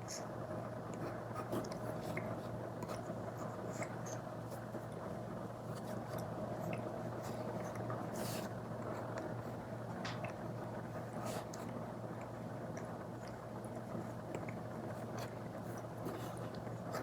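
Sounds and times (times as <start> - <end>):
background hiss and hum: 0.0 - 17.0.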